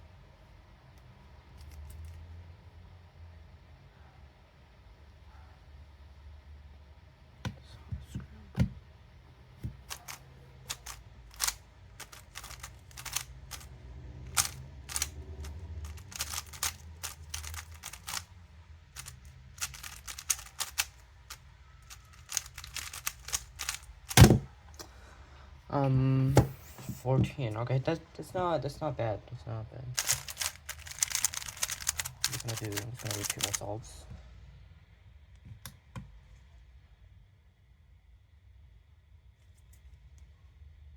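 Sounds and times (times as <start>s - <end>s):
puzzle cube plastic clicks: 9.6s - 18.3s, 19.0s - 24.5s, 30.0s - 33.7s.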